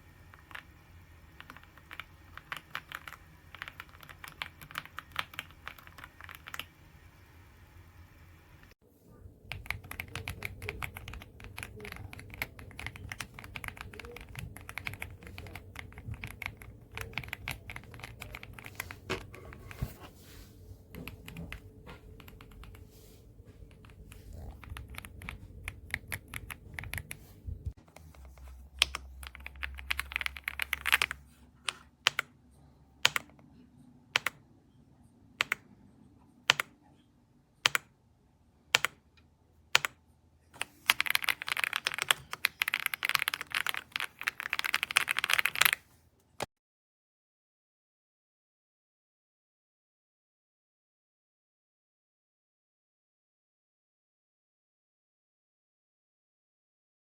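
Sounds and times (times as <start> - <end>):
mechanical keyboard typing: 0.3 - 0.7, 1.4 - 6.7, 9.5 - 19.8, 20.9 - 22.8, 23.7 - 27.3, 28.0 - 32.3, 33.0 - 33.4, 34.2 - 34.4, 35.4 - 35.6, 36.5 - 36.8, 37.6 - 37.9, 38.7 - 39.0, 39.8 - 40.0, 40.6 - 45.8.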